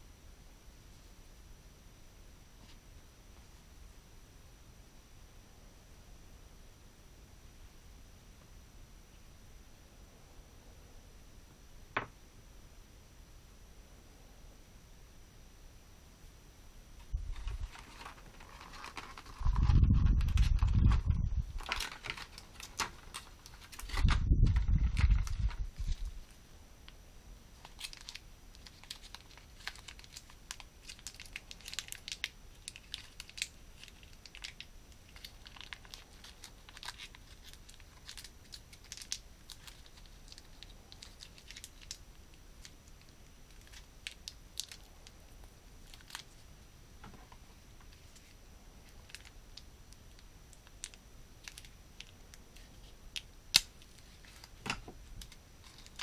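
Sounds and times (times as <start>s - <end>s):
plastic packaging rustling: 17.0s - 26.4s, 27.5s - 45.0s, 45.8s - 49.4s, 53.5s - 56.0s.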